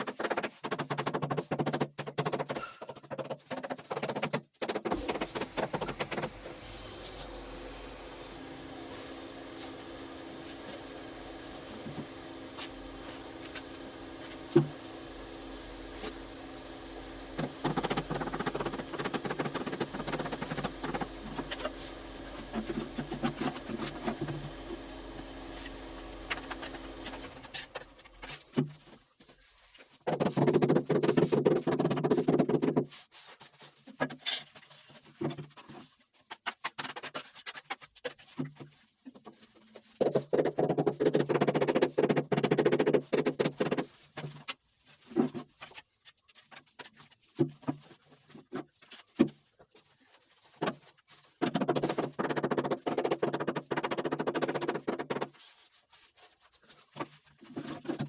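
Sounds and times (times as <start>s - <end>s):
motor-driven tool running: 4.9s - 28.6s.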